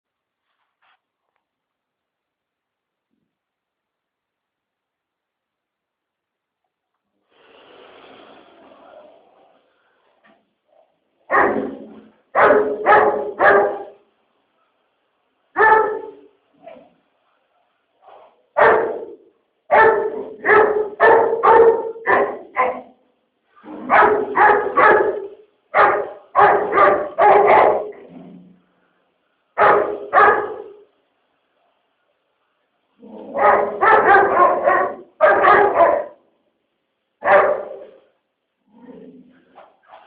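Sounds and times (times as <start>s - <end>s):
dog barking: 11.3s - 14.0s, 15.6s - 17.0s, 18.0s - 23.0s, 23.7s - 28.1s, 29.6s - 30.9s, 33.2s - 36.3s, 37.2s - 38.1s.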